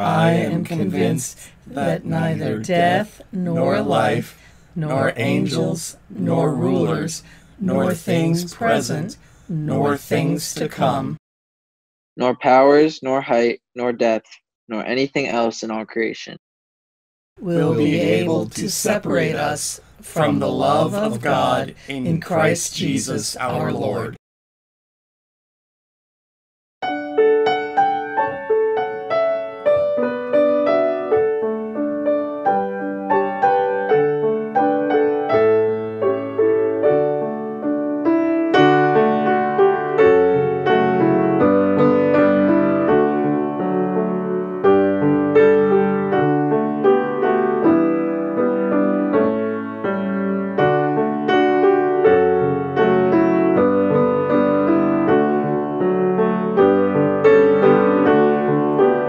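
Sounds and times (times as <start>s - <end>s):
solo piano music: 26.8s - 59.0s.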